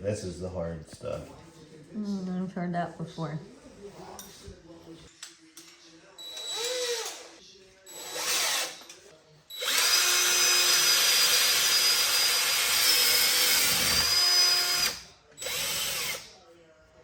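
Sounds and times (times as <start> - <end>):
power tool whining: 9.6 - 16.2.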